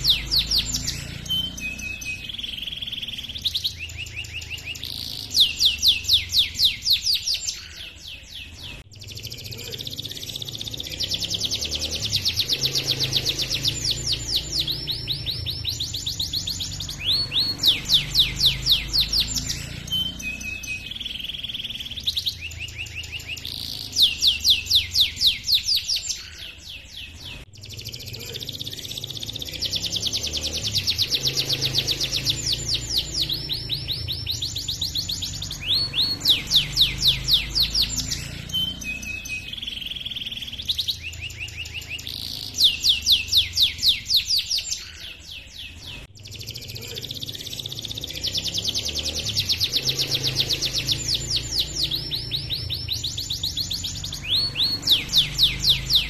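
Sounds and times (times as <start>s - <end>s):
canary singing trills: 0.0s - 56.0s.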